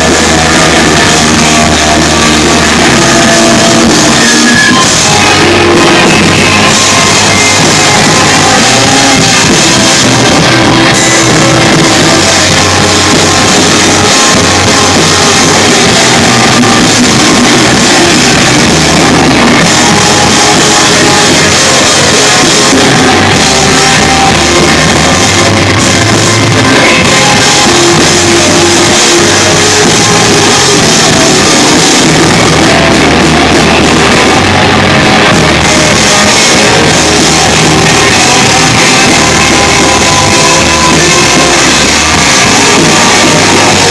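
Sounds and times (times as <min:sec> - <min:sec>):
distorted electric guitars: 0:00.0 - 0:43.9
drum kit: 0:00.0 - 0:43.9.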